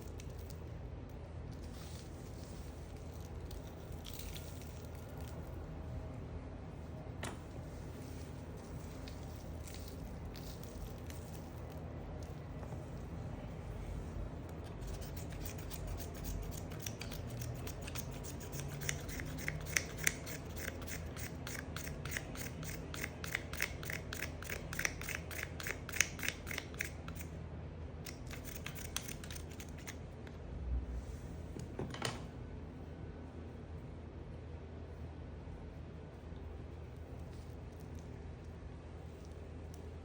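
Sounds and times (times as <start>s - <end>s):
knife cutting soap clicking: 15.0s - 27.3s.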